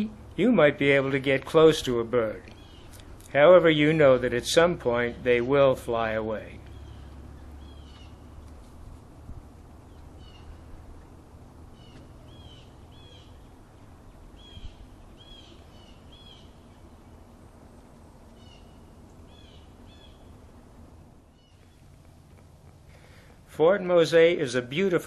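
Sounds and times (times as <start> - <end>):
low steady rumble: 0.0 - 25.0
bird chirping: 2.5 - 3.1, 6.6 - 8.4, 9.8 - 20.4, 21.2 - 23.3.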